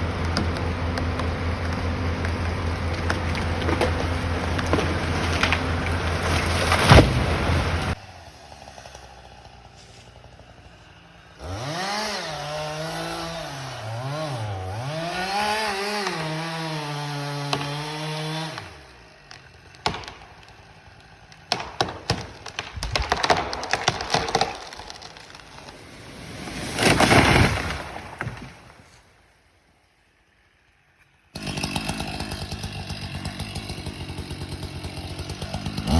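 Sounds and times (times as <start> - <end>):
wood splintering cracks: 0.0 - 8.0, 17.5 - 28.8, 31.4 - 35.9
chainsaw cutting wood: 0.0 - 28.8, 31.3 - 35.9.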